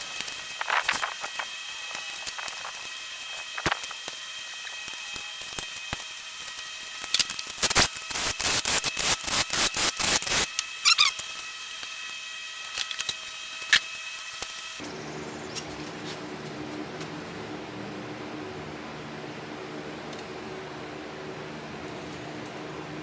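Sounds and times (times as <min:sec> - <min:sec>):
steady low hum: 0:14.8 - 0:23.0.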